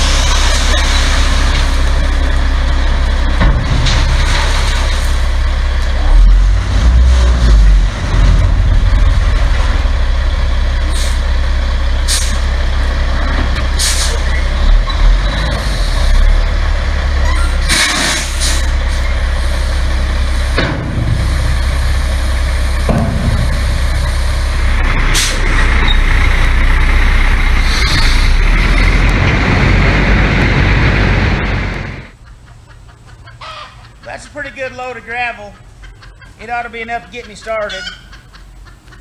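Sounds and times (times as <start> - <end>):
diesel truck engine rumbling: 0.0 - 39.0.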